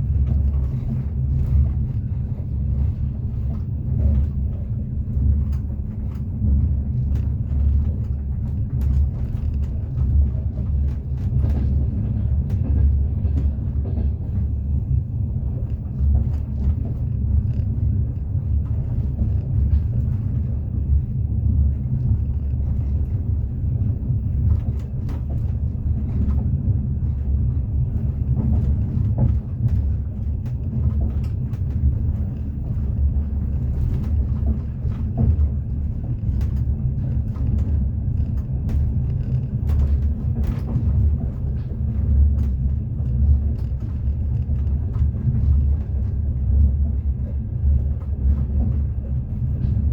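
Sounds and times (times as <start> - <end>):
train wheels rumbling on rails: 0.0 - 49.9.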